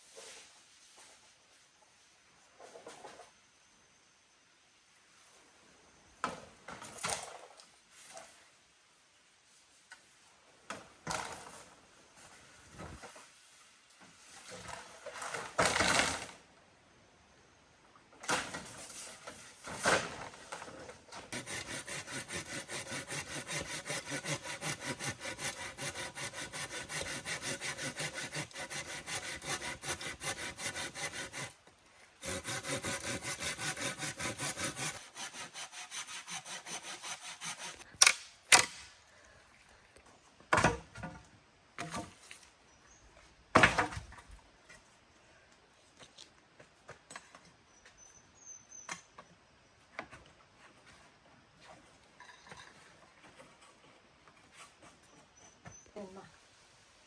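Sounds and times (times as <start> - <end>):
hand saw cutting wood: 21.3 - 31.6, 32.2 - 37.8.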